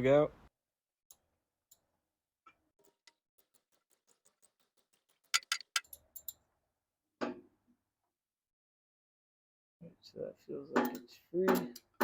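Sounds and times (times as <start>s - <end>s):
ratchet wrench clicking: 5.4s - 5.8s.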